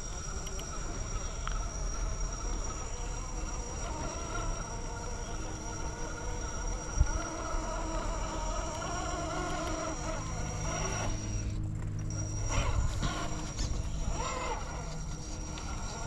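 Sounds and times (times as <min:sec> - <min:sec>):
electric motor and gears whining: 0:00.0 - 0:16.0.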